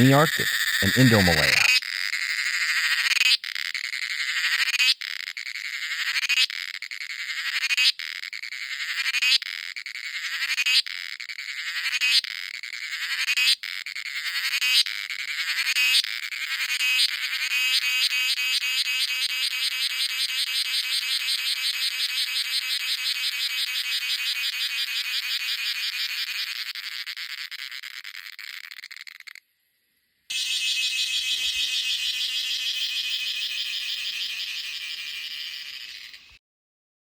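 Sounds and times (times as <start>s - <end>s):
cicada singing: 0.0s - 29.4s, 30.3s - 36.4s.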